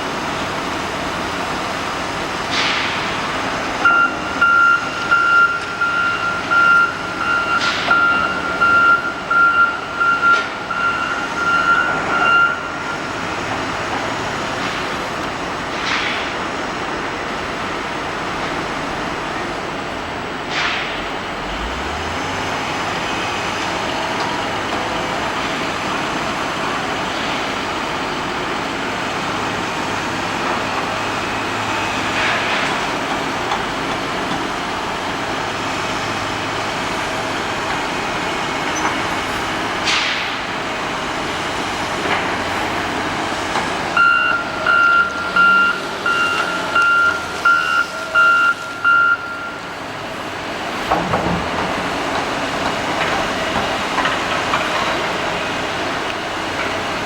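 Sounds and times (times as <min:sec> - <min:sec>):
heavy engine running: 0:00.0 - 0:57.0
reversing alarm beeping: 0:03.7 - 0:13.4, 0:43.9 - 0:50.3.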